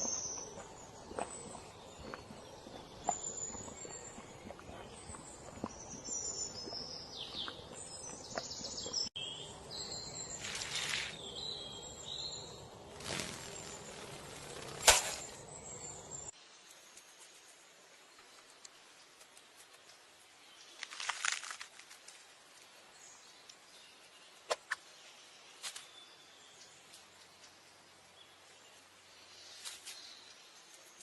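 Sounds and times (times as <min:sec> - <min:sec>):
birds chirping: 0:00.0 - 0:16.4.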